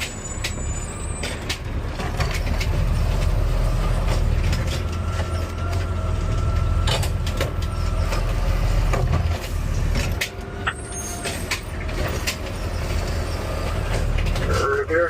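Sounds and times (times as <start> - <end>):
high squeal: 0.0 - 1.4, 10.6 - 13.8
diesel engine rumbling: 0.0 - 15.0.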